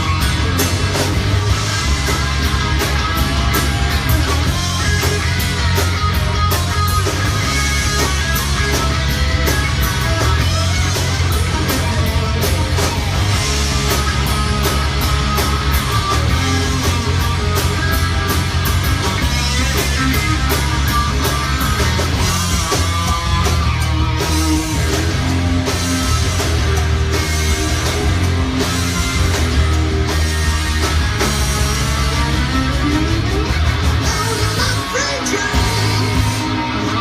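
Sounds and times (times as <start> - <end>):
drum beat with cymbals: 0.0 - 36.7
electric guitar: 0.0 - 37.0
rock band playing live: 0.0 - 37.0.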